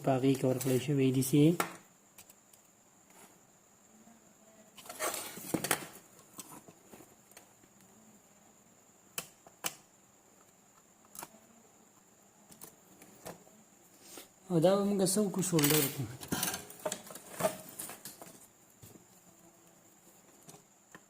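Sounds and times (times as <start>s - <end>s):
rustle and scrape: 0.3s - 1.0s, 3.0s - 3.5s, 4.8s - 7.2s.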